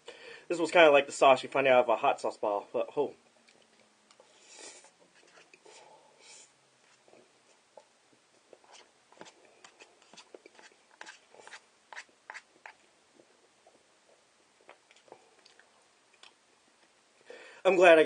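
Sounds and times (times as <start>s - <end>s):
person chewing noodles: 12.4s - 16.4s.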